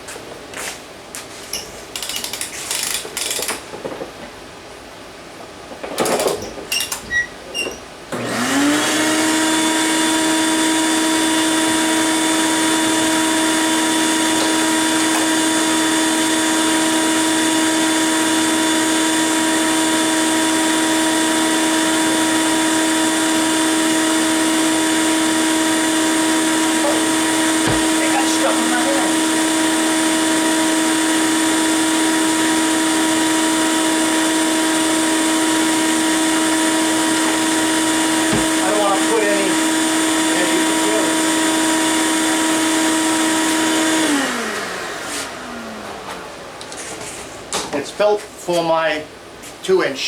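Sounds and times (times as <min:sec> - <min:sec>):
shop vacuum motor whining: 0:08.1 - 0:47.5.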